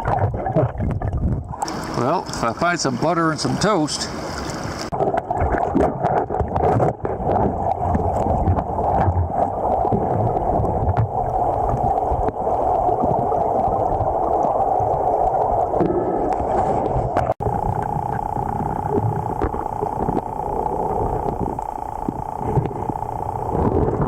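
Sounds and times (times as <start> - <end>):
river current rushing underwater: 1.5 - 6.3, 7.3 - 24.0.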